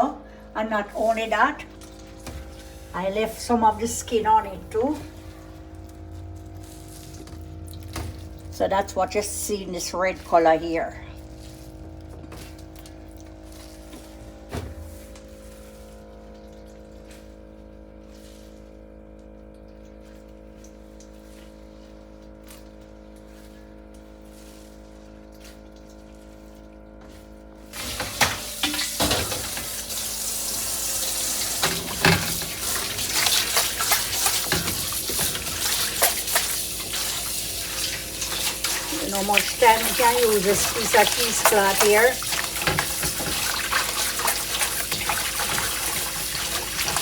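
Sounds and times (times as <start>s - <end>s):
faint hum: 0.0s - 14.9s
tap water running into sink: 27.7s - 47.0s.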